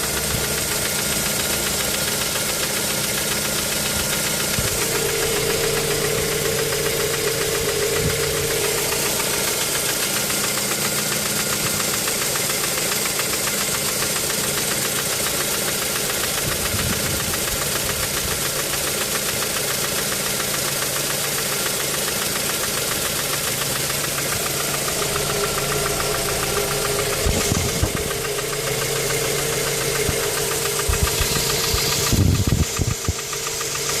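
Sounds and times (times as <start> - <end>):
car engine knocking: 0.0 - 34.0
loud thumps: 26.9 - 33.2.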